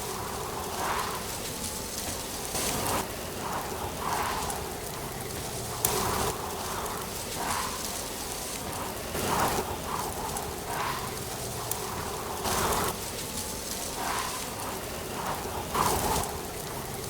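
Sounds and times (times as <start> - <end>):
wind rustling dry leaves: 0.0 - 17.0.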